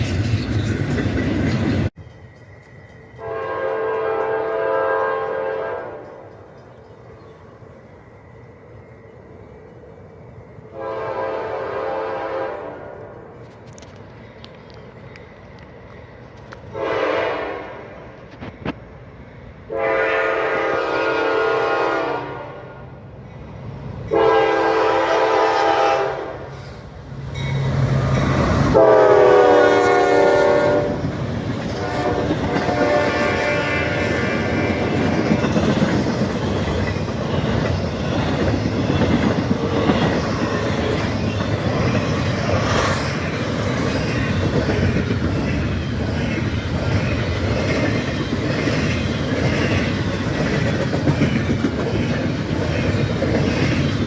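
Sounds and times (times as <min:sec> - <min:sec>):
train wheels clacking on rails: 0:00.0 - 0:09.9, 0:23.3 - 0:54.0
locomotive horn blasts: 0:03.2 - 0:06.3, 0:10.8 - 0:13.1, 0:16.7 - 0:17.8, 0:19.7 - 0:22.9, 0:24.1 - 0:26.5, 0:28.7 - 0:31.0, 0:31.8 - 0:34.4.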